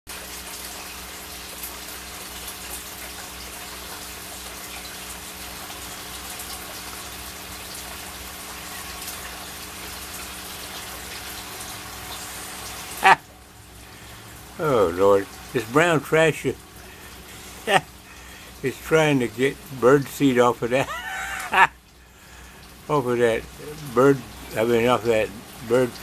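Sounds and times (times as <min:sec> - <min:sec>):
steady hiss: 0:12.2 - 0:26.0.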